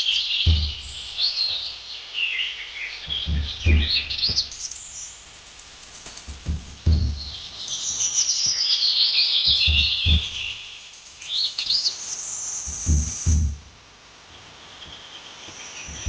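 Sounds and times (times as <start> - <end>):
low thumps: 0.0 - 1.7, 3.1 - 4.7, 6.3 - 7.7, 9.5 - 10.6, 12.7 - 13.9
birds chirping: 0.0 - 5.4, 6.0 - 16.0.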